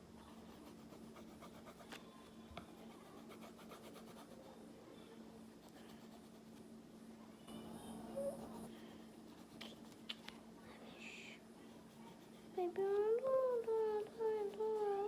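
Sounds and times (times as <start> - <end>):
low steady hum: 0.0 - 15.0
pencil scratching on paper: 0.4 - 2.0, 2.7 - 4.6, 5.6 - 6.7, 8.3 - 10.0, 11.7 - 12.8.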